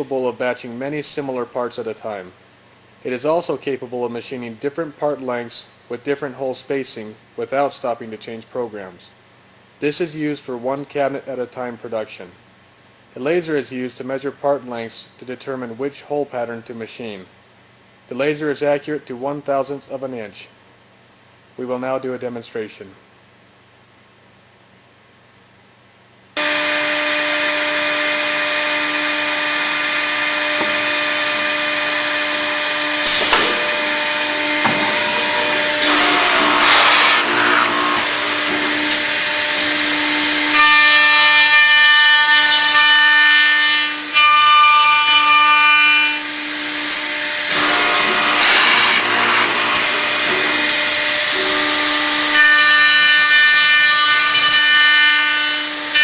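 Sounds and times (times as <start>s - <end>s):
machine motors humming: 26.4s - 41.3s, 46.3s - 52.8s
router cutting into wood: 26.4s - 56.0s.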